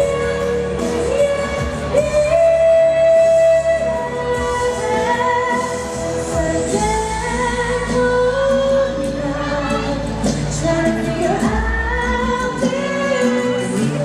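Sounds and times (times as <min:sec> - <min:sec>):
instrumental backing music: 0:00.0 - 0:14.0
woman singing pop ballad: 0:00.0 - 0:14.0.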